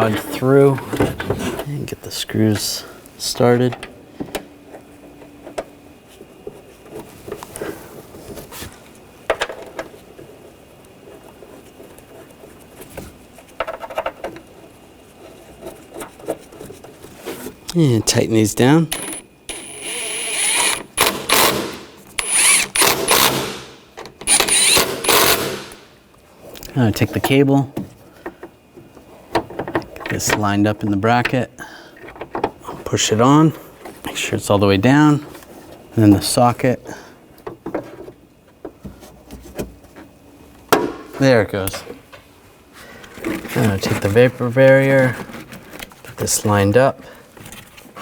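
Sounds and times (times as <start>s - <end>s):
power driver whining: 18.9s - 25.9s.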